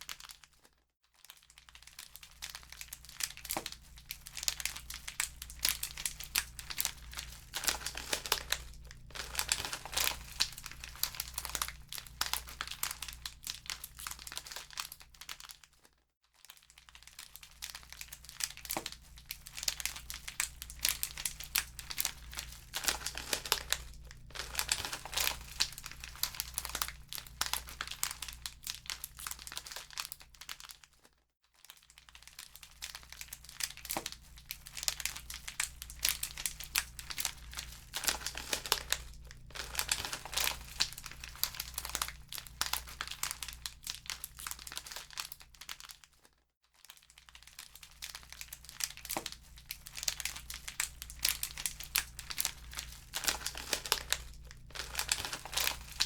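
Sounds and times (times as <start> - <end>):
wood fire crackling: 3.0 - 13.4, 18.6 - 28.3, 34.8 - 44.7, 50.0 - 56.0.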